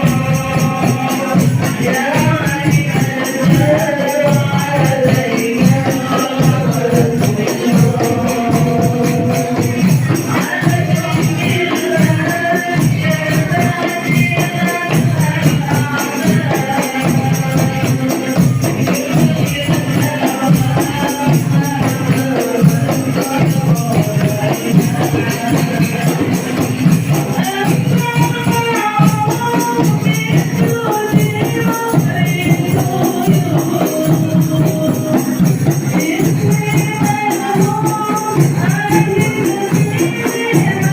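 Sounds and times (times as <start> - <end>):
frame drums beating fast rhythm: 0.0 - 40.9
group singing: 0.0 - 40.9.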